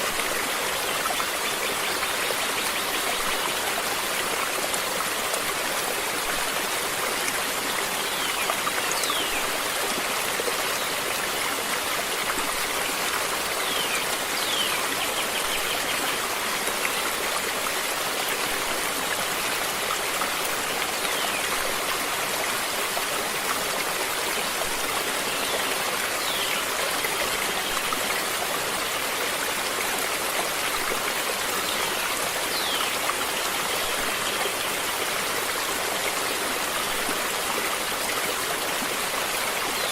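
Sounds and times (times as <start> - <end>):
stream water running: 0.0 - 39.9.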